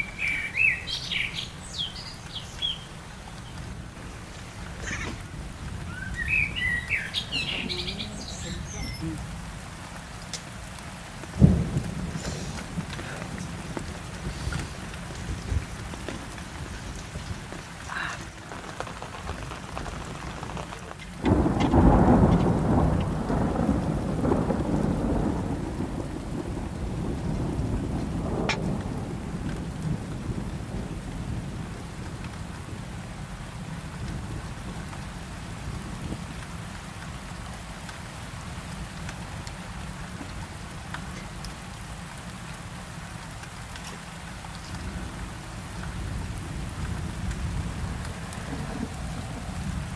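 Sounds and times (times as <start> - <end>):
steady rain: 0.0 - 49.9
thunder clap rumbling: 0.0 - 49.9.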